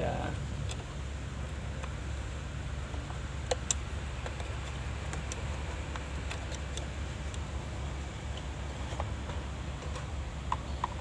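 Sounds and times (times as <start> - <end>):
steady low hum: 0.0 - 11.0
clicks and taps on wiring: 2.9 - 7.4.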